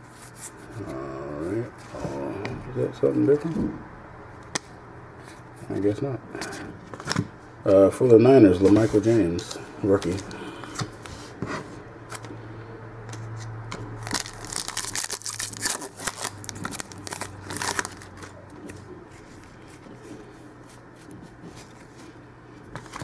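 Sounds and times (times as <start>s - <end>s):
low steady hum: 0.0s - 23.0s
cards shuffling: 6.4s - 7.3s, 8.5s - 12.4s, 13.0s - 23.0s
wrapper tearing and crinkling: 13.9s - 18.8s.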